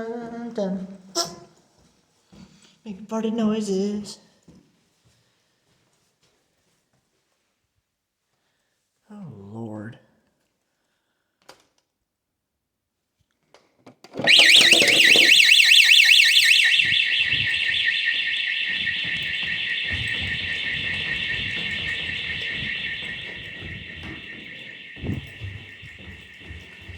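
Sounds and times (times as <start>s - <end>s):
fire alarm siren warbling: 14.2s - 26.9s.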